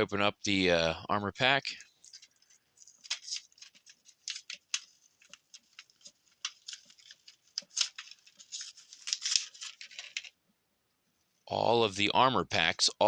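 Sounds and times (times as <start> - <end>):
scissors snipping plastic package: 2.8 - 10.2.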